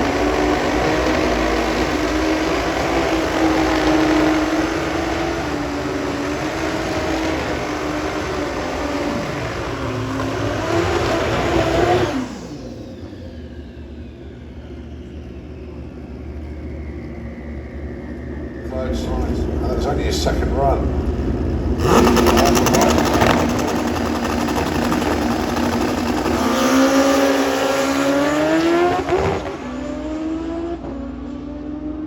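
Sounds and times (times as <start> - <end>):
motorcycle engine at full throttle: 0.0 - 32.0.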